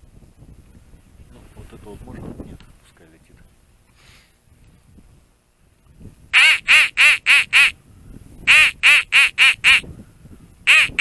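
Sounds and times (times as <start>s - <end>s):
duck quacking loudly: 6.4s - 7.7s, 8.5s - 9.8s, 10.7s - 11.0s.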